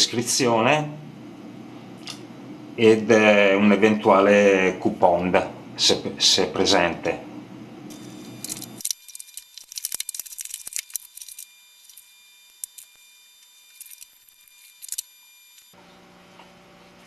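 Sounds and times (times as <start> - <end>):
packaging crinkling and rustling: 8.4 - 15.1.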